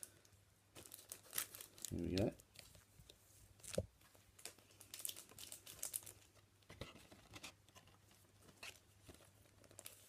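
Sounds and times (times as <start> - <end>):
wrapper rustling and crinkling: 0.0 - 6.5, 8.0 - 10.0.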